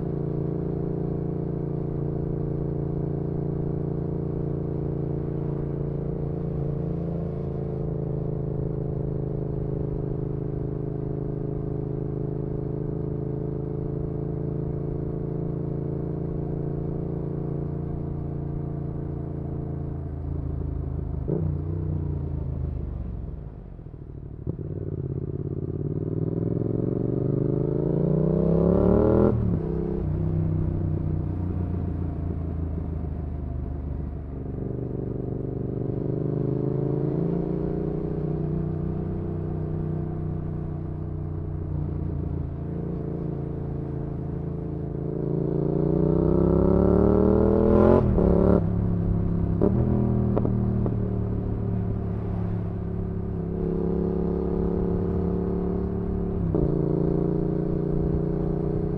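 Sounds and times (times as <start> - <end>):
motorcycle engine revving: 24.5 - 32.0, 34.9 - 58.9.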